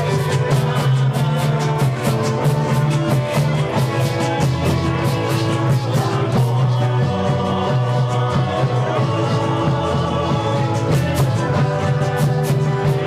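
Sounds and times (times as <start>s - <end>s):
live band playing: 0.0s - 13.0s.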